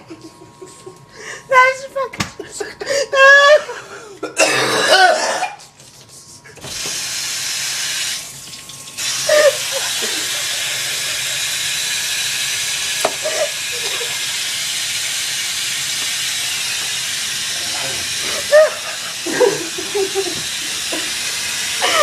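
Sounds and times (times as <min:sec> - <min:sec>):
tap water running into sink: 0:06.6 - 0:22.0.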